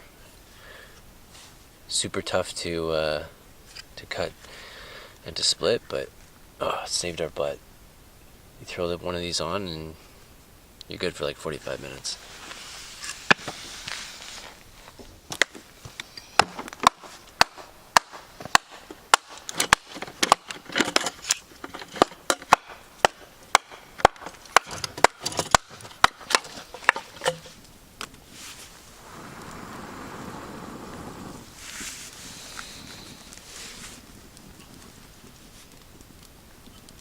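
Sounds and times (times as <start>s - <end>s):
firewood being chopped: 13.0s - 13.7s, 14.6s - 28.4s.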